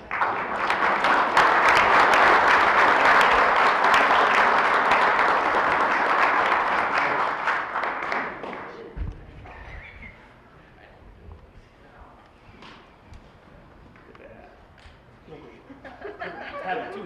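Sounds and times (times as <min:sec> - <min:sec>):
audience applauding: 0:00.0 - 0:08.9.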